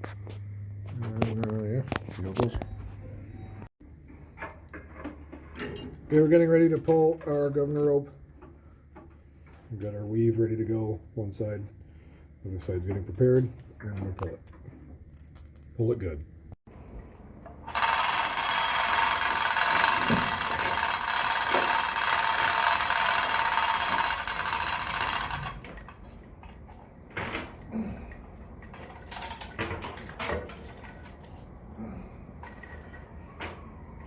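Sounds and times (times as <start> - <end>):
mechanical running noise: 17.6 - 25.7.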